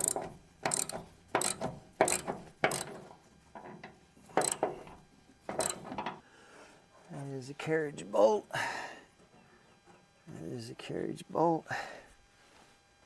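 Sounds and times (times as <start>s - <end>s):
ratchet wrench clicking: 0.0s - 3.0s, 4.4s - 4.7s, 5.5s - 5.9s.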